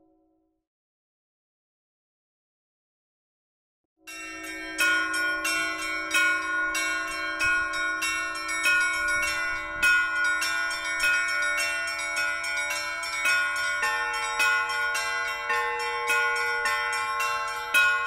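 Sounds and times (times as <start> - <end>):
lighter higher bells ringing: 4.1 - 18.0
loud church bell strikes: 4.1 - 18.0
low bell hum: 4.1 - 18.0.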